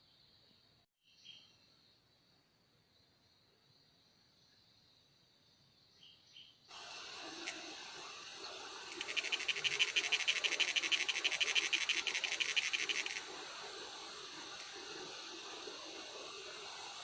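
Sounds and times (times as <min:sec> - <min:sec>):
steady hiss: 0:06.7 - 0:17.0.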